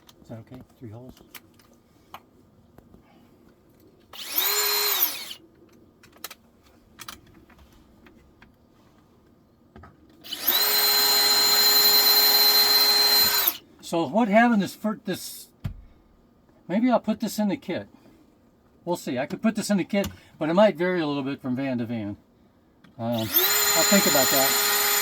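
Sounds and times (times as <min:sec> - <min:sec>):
cordless drill whining: 0:04.1 - 0:05.4, 0:10.2 - 0:13.6, 0:23.1 - 0:25.0.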